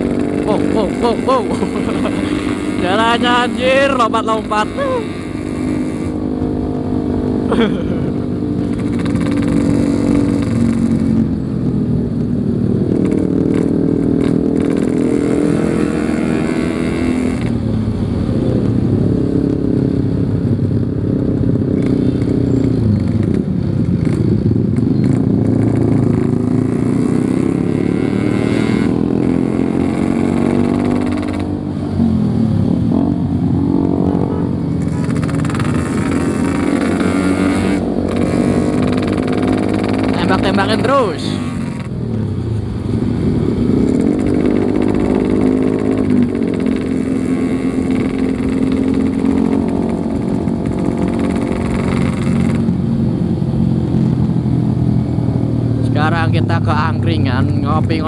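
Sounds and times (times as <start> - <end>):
motorcycle two-stroke engine revving: 0.0 - 58.0.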